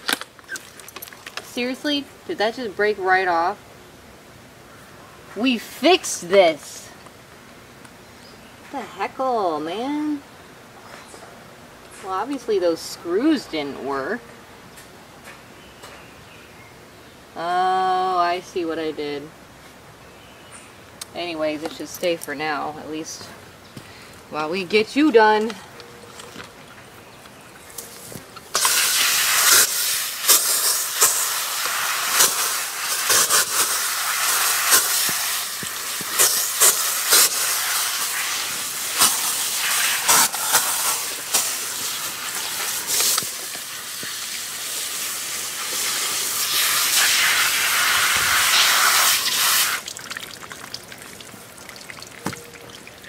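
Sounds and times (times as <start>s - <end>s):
water splashing: 0.5s - 1.4s, 33.8s - 53.0s
water spraying on dog: 28.5s - 53.0s.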